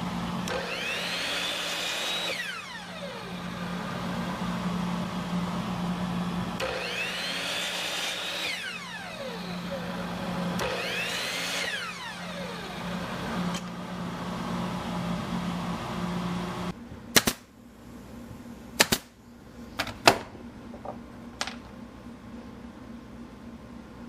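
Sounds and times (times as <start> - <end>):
power tool motor winding down: 0.0 - 16.7.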